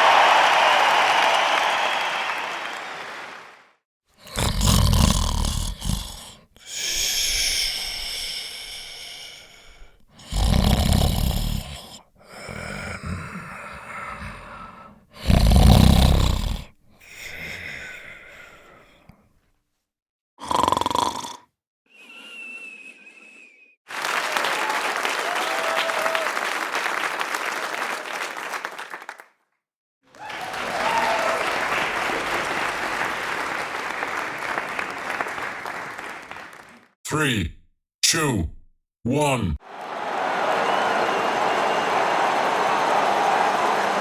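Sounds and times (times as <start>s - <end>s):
applause: 0.0s - 3.8s, 23.9s - 29.4s, 30.0s - 37.0s, 39.6s - 44.0s
loud rumbling snores: 4.2s - 18.3s, 20.4s - 21.5s
snort: 4.2s - 19.2s, 20.4s - 23.8s
thin whistle-like tone: 22.0s - 23.8s.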